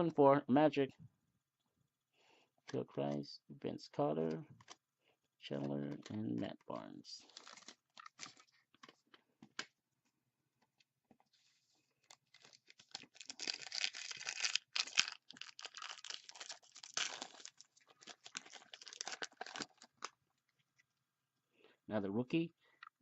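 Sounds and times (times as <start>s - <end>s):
foil wrapper tearing and crinkling: 7.3s - 8.5s, 12.0s - 20.2s.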